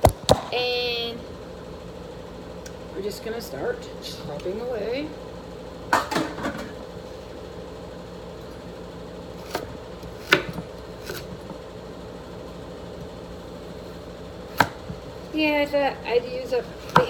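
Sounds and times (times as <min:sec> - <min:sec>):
steady background hum: 0:00.0 - 0:17.0
knife chopping on cutting board: 0:09.4 - 0:11.4, 0:14.5 - 0:15.0, 0:16.8 - 0:17.0.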